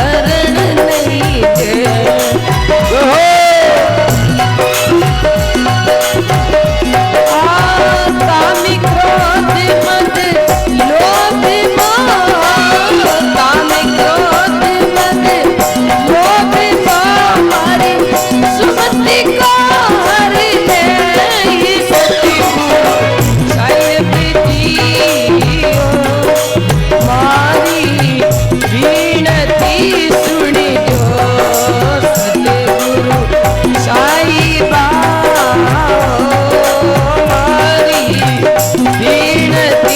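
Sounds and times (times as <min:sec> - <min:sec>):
hand drums: 0:00.0 - 0:39.9
rattling percussion: 0:00.0 - 0:39.9.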